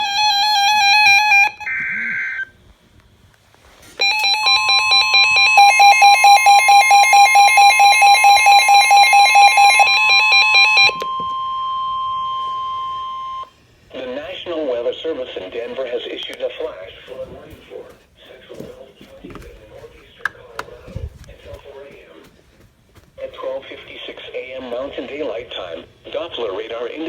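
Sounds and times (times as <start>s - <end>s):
warbling alarm beeping: 0.0s - 2.5s, 4.0s - 13.6s
steady warning tone: 0.0s - 2.7s, 3.8s - 26.9s.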